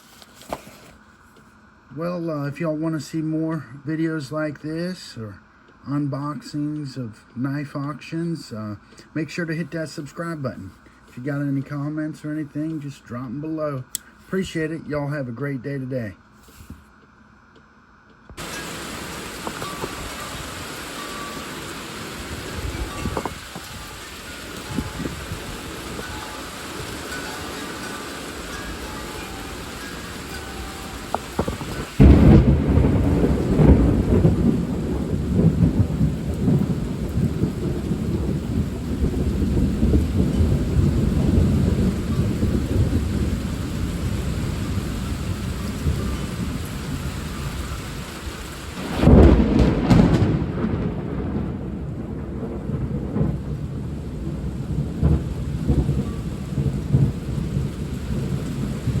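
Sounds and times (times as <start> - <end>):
steady rain: 18.4 - 59.0
thunder clap and rumble: 18.4 - 59.0.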